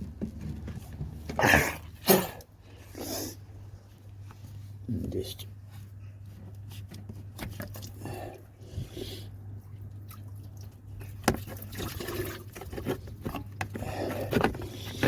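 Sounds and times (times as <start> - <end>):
coolant dripping into a bucket: 9.8 - 15.0.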